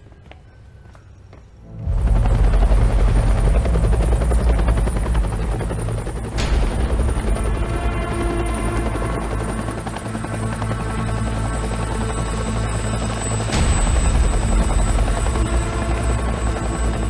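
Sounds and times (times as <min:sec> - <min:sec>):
low rumble: 0:01.7 - 0:09.3
helicopter rotor chopping: 0:01.8 - 0:17.0.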